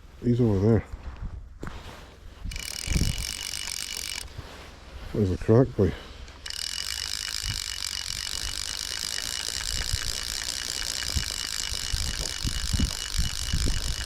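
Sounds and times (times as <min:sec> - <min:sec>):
fishing reel ratchet buzzing: 0:02.5 - 0:04.3, 0:06.3 - 0:14.0.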